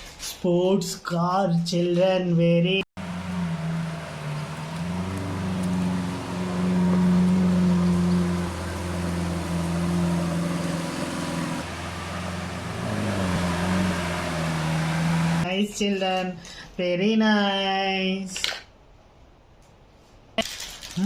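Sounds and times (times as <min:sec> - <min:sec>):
car engine drone: 0:03.0 - 0:15.5.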